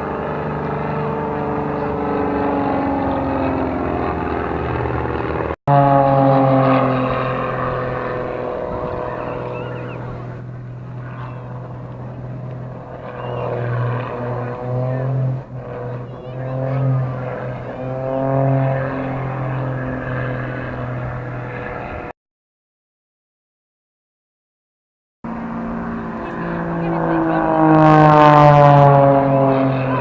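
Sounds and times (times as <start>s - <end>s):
propeller aircraft engine droning: 0.0s - 22.1s, 25.2s - 30.0s.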